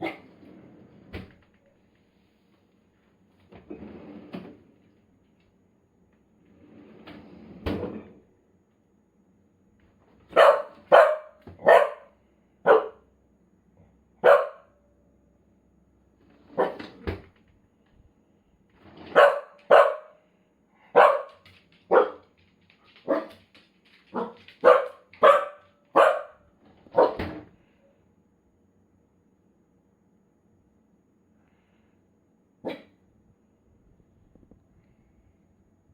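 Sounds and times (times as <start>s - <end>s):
dog barking: 0.0s - 0.3s, 10.3s - 13.0s, 14.2s - 14.8s, 16.5s - 16.8s, 19.1s - 20.2s, 20.9s - 22.3s, 23.0s - 23.4s, 24.1s - 27.3s, 32.6s - 32.9s.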